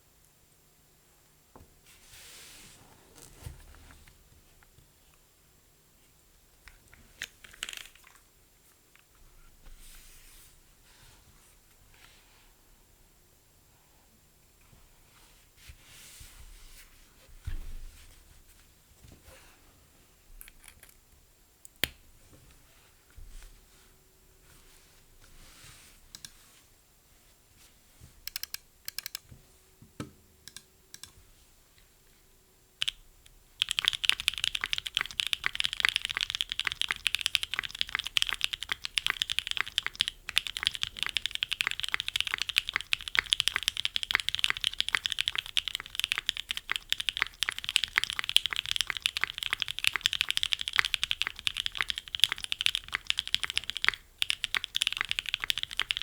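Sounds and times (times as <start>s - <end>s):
mechanical keyboard typing: 7.3s - 8.2s, 28.3s - 29.2s, 32.8s - 56.0s.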